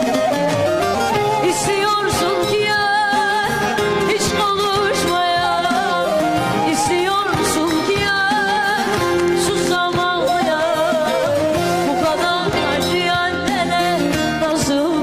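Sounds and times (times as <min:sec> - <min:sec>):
folk song with ornamented melody: 0:00.0 - 0:15.0.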